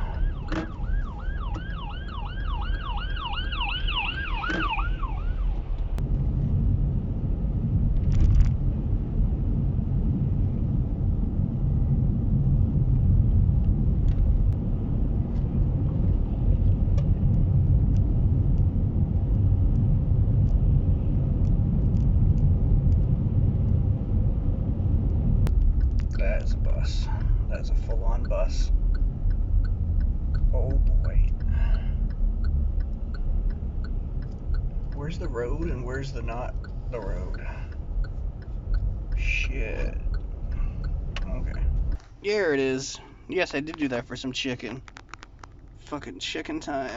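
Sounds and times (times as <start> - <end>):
siren yelping: 0.0 - 5.8
car road and engine rumble: 0.0 - 46.9
faint ticks: 27.0 - 42.1.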